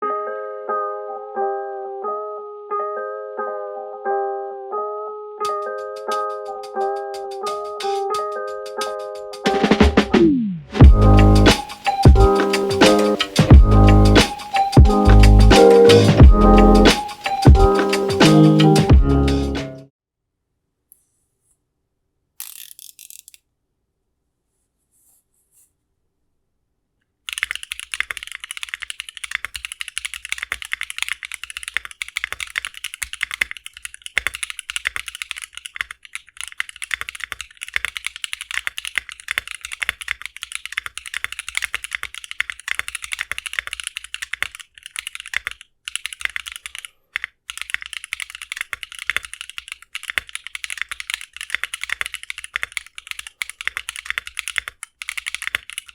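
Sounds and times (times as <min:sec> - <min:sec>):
fast typing on keyboard: 0:10.8 - 0:18.9, 0:27.3 - 0:55.9.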